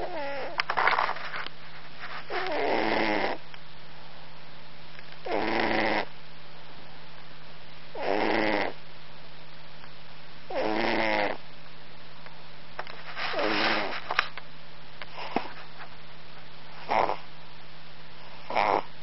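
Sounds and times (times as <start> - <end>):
cat snoring: 0.0 - 0.6, 2.3 - 3.4, 5.2 - 6.1, 7.9 - 8.8, 10.5 - 11.4, 13.3 - 14.0, 16.8 - 17.3, 18.4 - 18.9
steady low hum: 0.0 - 19.0.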